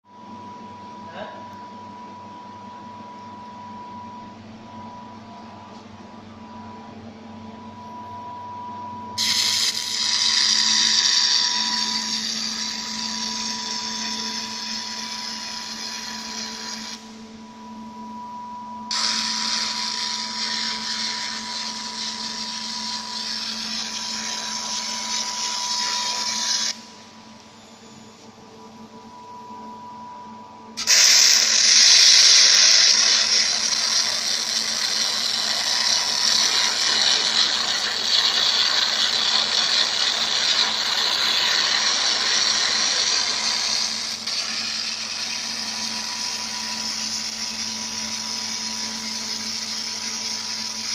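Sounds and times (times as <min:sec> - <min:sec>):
machine hum with high tone: 0:00.0 - 0:50.9
laser cutting metal hissing: 0:09.2 - 0:17.0, 0:18.9 - 0:26.8, 0:30.8 - 0:50.9.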